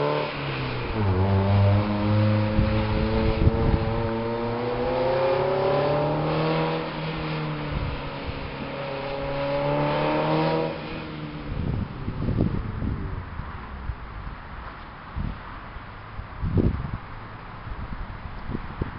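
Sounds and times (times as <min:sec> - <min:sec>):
car engine revving: 0:00.0 - 0:12.4.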